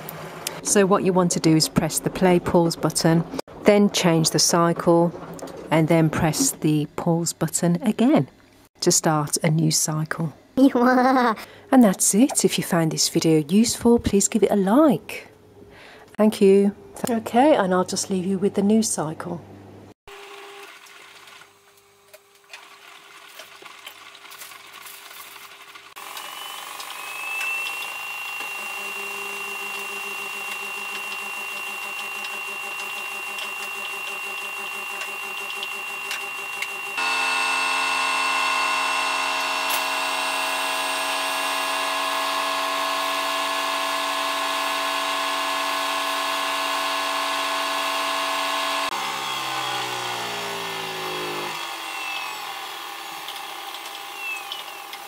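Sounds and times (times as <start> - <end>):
washing machine drum motor whining: 0.0 - 6.8, 25.9 - 55.0.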